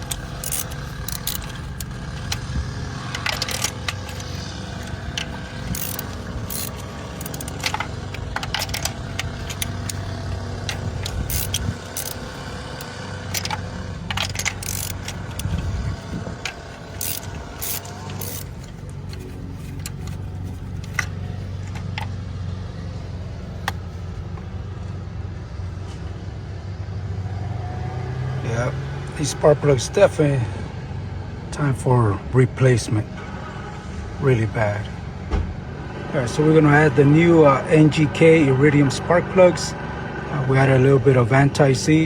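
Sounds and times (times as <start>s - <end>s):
metal hand tools clinking and scraping: 0.0s - 22.1s
steady low hum: 0.0s - 25.8s.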